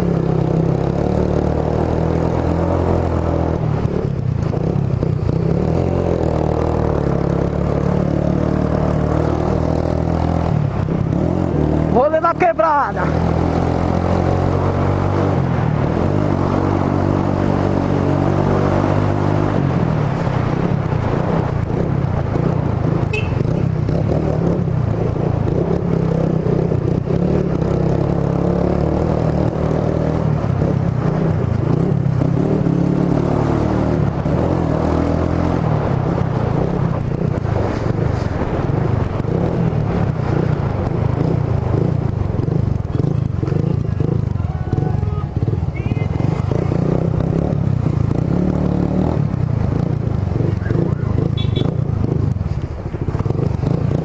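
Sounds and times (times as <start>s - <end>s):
motorcycle engine exhaust note: 23.0s - 23.8s, 50.7s - 52.3s.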